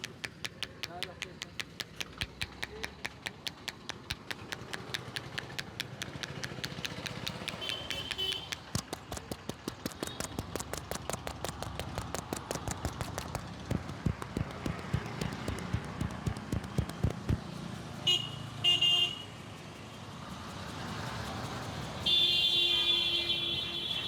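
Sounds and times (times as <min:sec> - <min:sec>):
hands tapping on body: 0:00.0 - 0:17.5.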